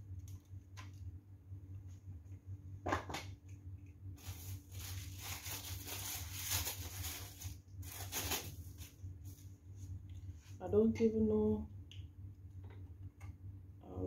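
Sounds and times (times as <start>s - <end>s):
steady low hum: 0.0s - 14.0s
rustling and scraping: 4.2s - 10.6s.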